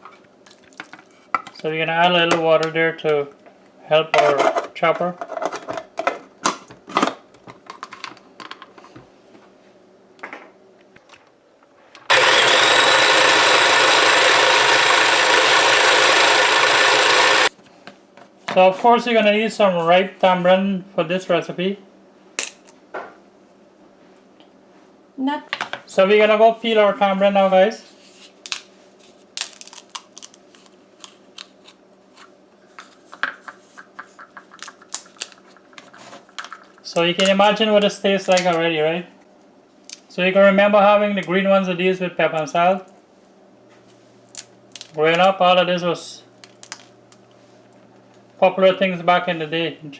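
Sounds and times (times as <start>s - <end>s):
electric chopper motor running: 12.1s - 17.5s
pod shells cracking: 29.4s - 30.7s, 34.4s - 35.8s, 44.3s - 45.0s, 46.4s - 47.3s.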